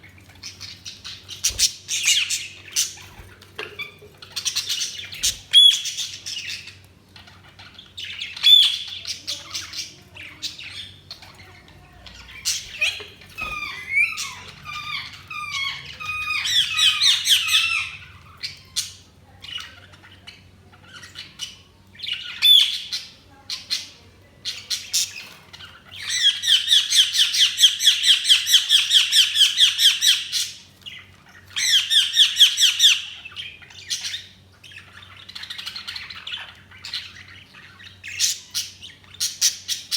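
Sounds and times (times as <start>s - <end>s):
budgies chirping and chattering: 0.0s - 39.9s.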